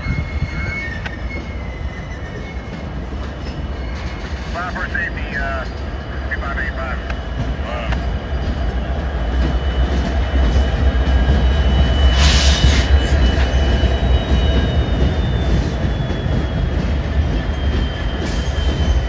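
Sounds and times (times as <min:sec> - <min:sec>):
high wheel squeal: 0:00.0 - 0:04.6, 0:09.5 - 0:19.0
heavy low rumble of trains: 0:00.0 - 0:19.0.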